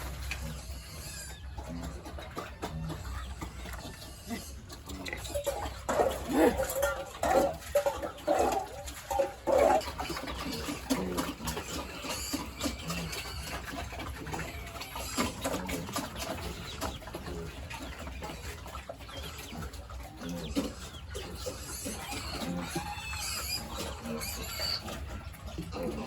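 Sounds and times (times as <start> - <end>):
farm animals calling: 0.0 - 26.0.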